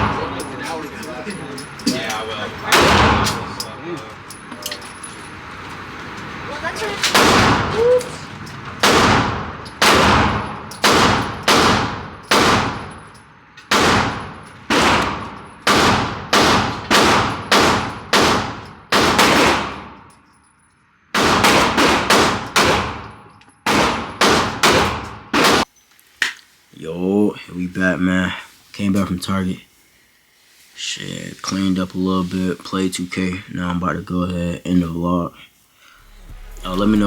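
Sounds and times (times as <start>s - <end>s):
gunshots with echo: 0.0s - 0.9s, 2.7s - 3.8s, 7.0s - 7.9s, 8.6s - 13.1s, 13.7s - 20.1s, 21.1s - 25.7s.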